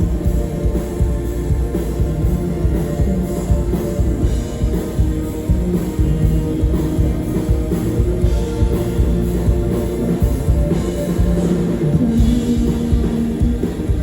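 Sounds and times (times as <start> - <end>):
rock band playing live: 0.0 - 14.0.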